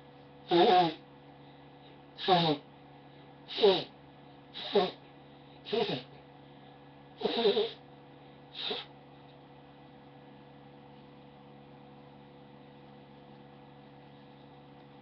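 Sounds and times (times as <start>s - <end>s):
person blowing nose: 0.5s - 1.0s, 2.2s - 2.6s, 3.5s - 3.9s, 4.6s - 5.0s, 5.7s - 6.1s, 7.2s - 7.8s, 8.6s - 8.9s.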